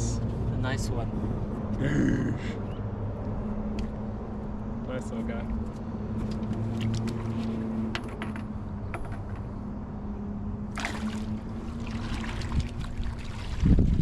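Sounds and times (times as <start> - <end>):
water lapping against boat hull: 10.7 - 14.0.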